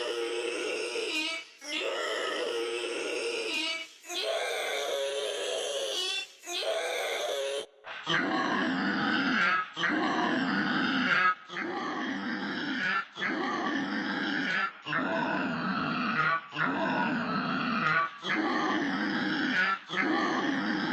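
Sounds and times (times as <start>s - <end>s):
low growl-like pitch-shifted voice: 6.6s - 20.9s.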